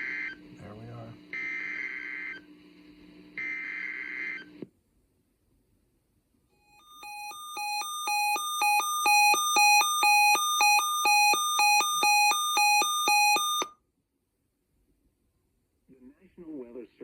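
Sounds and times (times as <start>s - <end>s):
two-tone alarm beeps: 6.7s - 13.7s.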